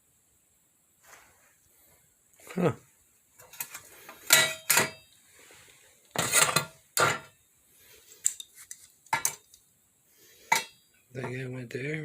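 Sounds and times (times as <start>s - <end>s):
glassware clinking: 4.3s - 5.1s, 9.1s - 9.5s, 10.5s - 10.8s.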